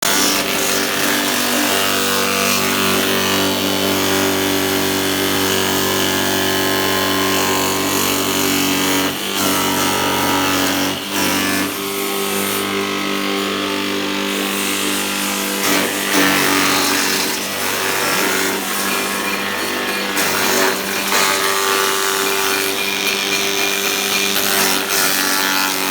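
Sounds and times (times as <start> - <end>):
chopping machine motor humming: 6.0 - 25.9.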